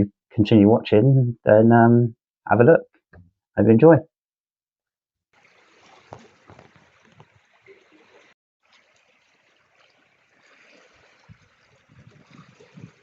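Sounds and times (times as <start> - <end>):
water: 5.3 - 13.0
wind: 5.4 - 13.0.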